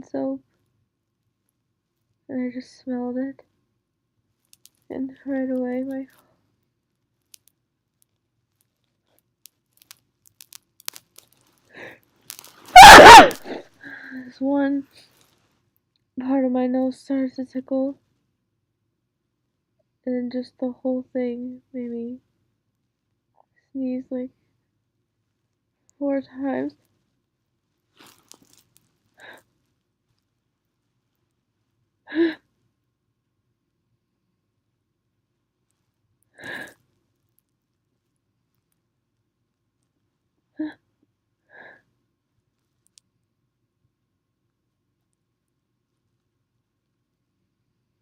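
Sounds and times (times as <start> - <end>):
woman sneezing: 12.8 - 13.6
faint sniffs and breaths: 36.3 - 37.0.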